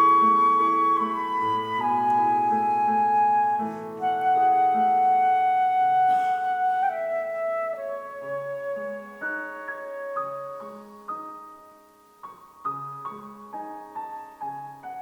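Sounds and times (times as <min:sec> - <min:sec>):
flute playing slow melody: 0:00.0 - 0:11.0.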